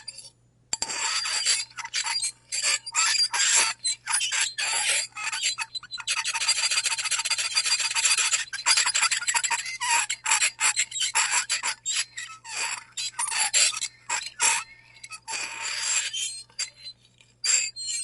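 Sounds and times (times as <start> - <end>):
fork scraping plate: 0.0 - 18.0
thin high squeal: 0.0 - 18.0.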